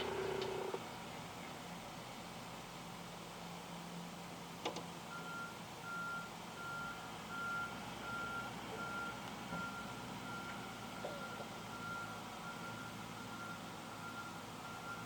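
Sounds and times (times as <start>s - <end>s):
vehicle reversing alarm beeping: 0.0s - 0.8s, 5.1s - 15.0s.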